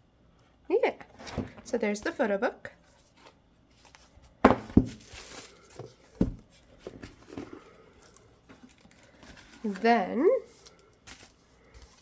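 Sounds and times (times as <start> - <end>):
paper and packaging rustling: 2.8 - 12.0.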